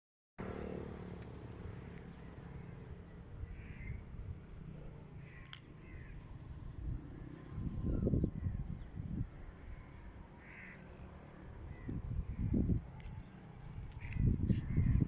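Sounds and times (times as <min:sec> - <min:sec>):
crows cawing: 0:05.2 - 0:06.2, 0:10.4 - 0:10.9.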